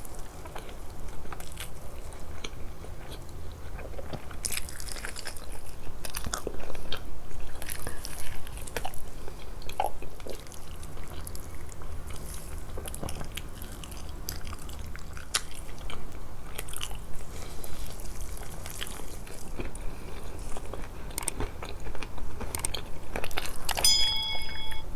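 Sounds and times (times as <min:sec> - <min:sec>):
biting and chewing food: 0:00.0 - 0:23.9
steady low hum: 0:23.8 - 0:24.9.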